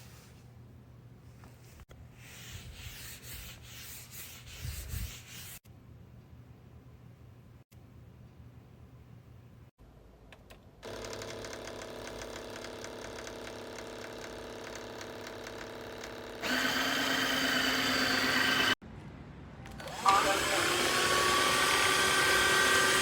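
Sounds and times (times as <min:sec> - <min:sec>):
vacuum mop motor humming: 0:16.4 - 0:18.8, 0:19.8 - 0:23.0.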